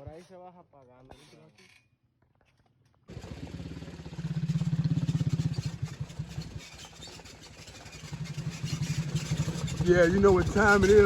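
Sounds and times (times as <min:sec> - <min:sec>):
vehicle engine pulsing: 0:03.1 - 0:11.0.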